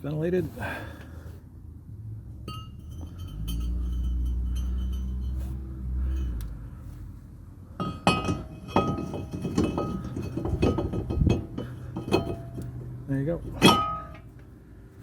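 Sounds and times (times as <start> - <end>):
metal clinking and ringing taps: 2.5 - 5.5, 7.8 - 12.9, 13.5 - 14.3.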